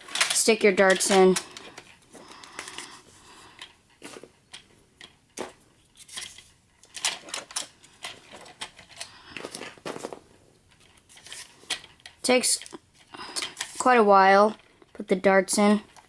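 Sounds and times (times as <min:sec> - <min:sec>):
plastic clicks of toy darts loading: 0:00.0 - 0:02.9.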